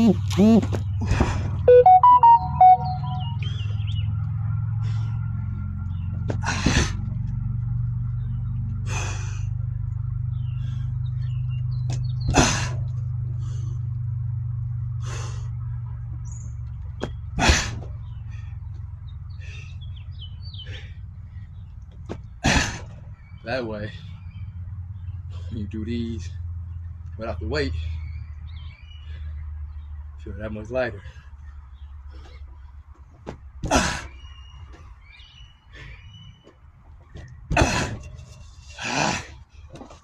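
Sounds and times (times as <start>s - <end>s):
steady low hum: 0.0s - 30.1s.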